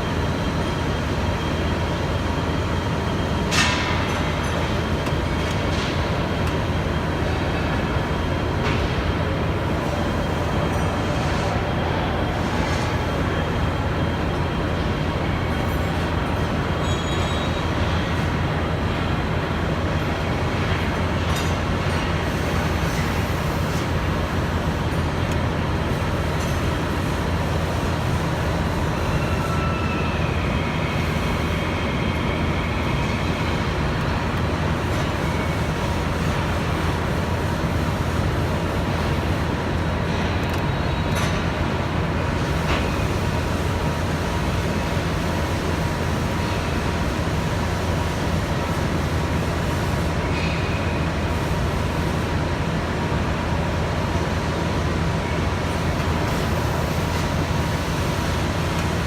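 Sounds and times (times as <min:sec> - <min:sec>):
industrial machinery hum: 0:00.0 - 0:59.0.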